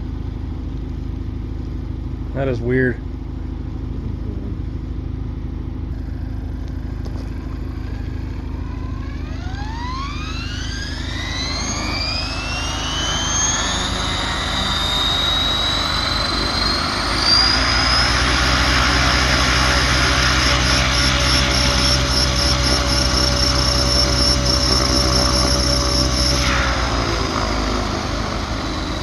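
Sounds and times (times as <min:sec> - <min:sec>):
low rotor hum: 0:00.0 - 0:29.0
electric helicopter motor whine: 0:05.8 - 0:29.0.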